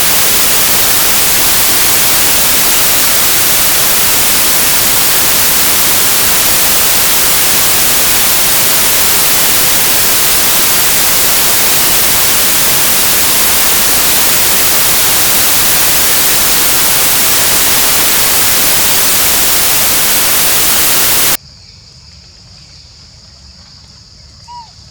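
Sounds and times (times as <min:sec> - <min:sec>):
loud static hiss: 0:00.0 - 0:21.4.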